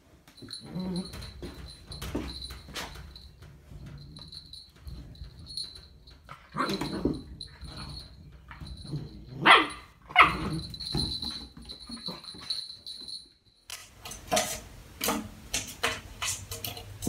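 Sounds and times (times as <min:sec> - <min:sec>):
dog barking: 0:09.4 - 0:10.5.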